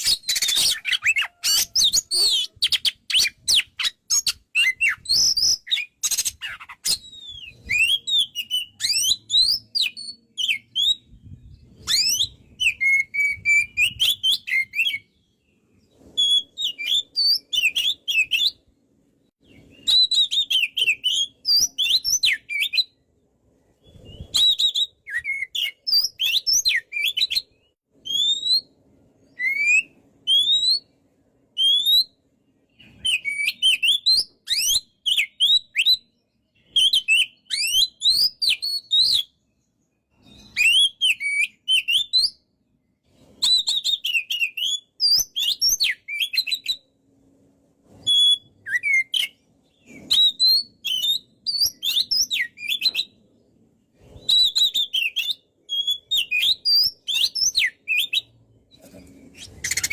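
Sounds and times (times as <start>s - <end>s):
bird whistling song: 0.0s - 18.7s, 19.4s - 23.0s, 23.7s - 31.0s, 31.6s - 42.5s, 43.1s - 47.0s, 47.9s - 59.9s.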